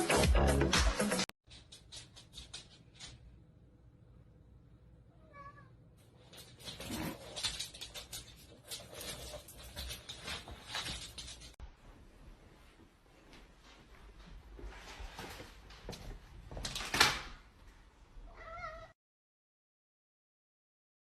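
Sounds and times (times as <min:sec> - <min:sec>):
cat meowing: 0:05.1 - 0:05.8, 0:18.3 - 0:19.0
rustling and scuffling: 0:06.0 - 0:17.8.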